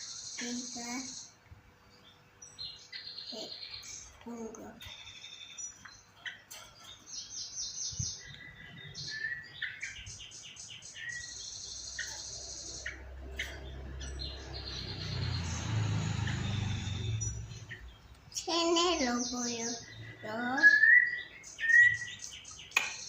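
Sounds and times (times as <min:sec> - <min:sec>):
bird chirping and trilling: 0:00.0 - 0:23.0.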